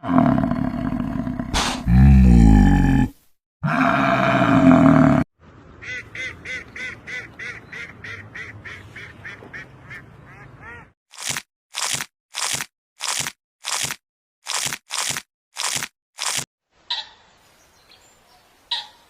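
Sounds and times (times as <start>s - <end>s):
short crunching bursts: 11.1s - 16.5s.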